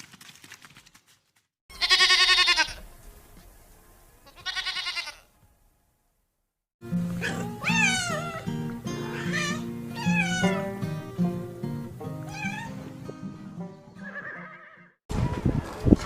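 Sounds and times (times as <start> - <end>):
background music: 6.8 - 14.6
cat meowing: 7.2 - 10.6, 12.2 - 12.8.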